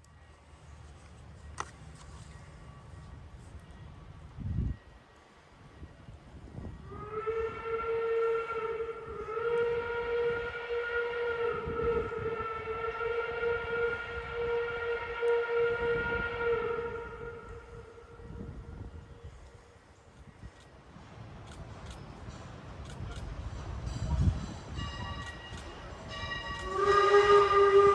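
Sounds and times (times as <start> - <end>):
steam locomotive whistle: 6.8 - 19.2, 24.8 - 27.9.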